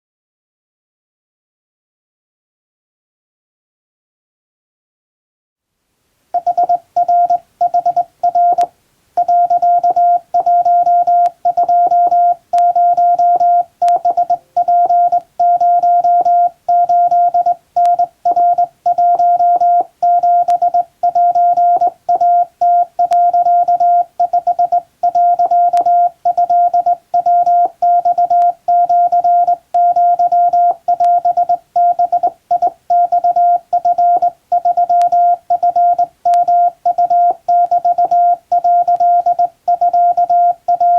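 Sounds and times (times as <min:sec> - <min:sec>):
morse code beeps: 0:06.4 - 0:40.9
sharp clicks: 0:30.9 - 0:38.2.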